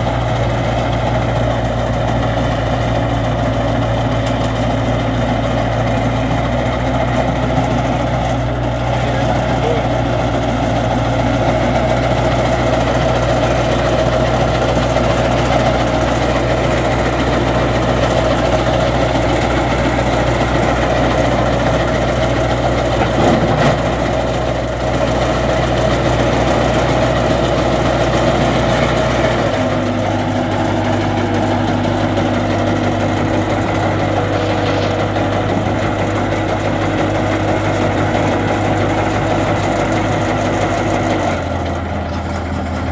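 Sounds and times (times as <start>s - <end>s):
loader engine running: 0.0s - 42.9s.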